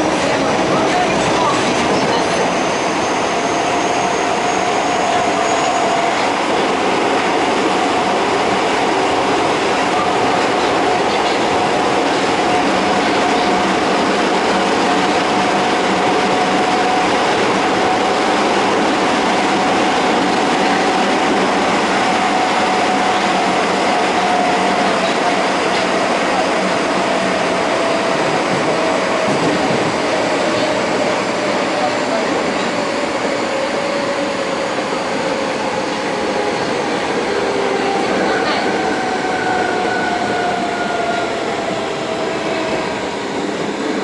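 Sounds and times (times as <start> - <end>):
subway train wheel and tunnel noise: 0.0 - 44.0.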